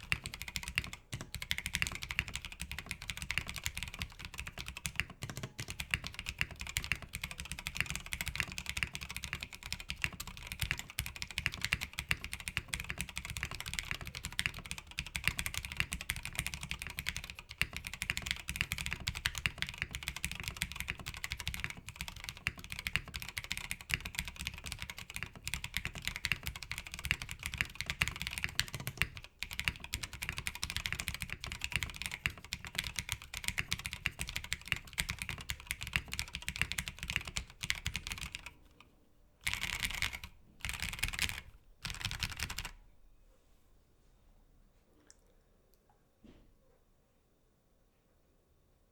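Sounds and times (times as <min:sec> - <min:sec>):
mechanical keyboard typing: 0:00.0 - 0:38.8, 0:39.4 - 0:42.8.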